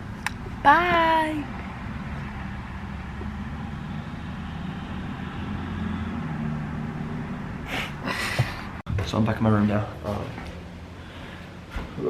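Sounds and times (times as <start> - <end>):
car engine humming: 0.0 - 8.8.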